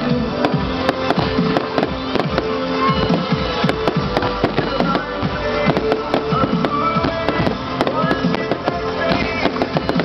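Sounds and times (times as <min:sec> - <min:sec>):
music with fast beat: 0:00.0 - 0:10.0.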